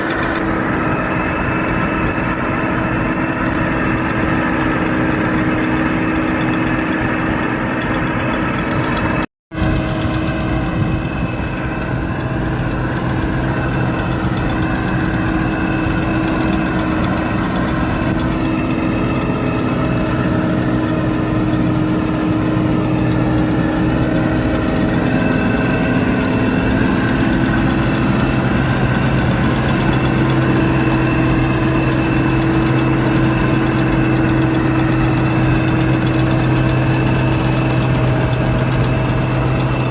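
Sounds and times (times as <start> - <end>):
combine harvester engine droning: 0.0 - 39.9.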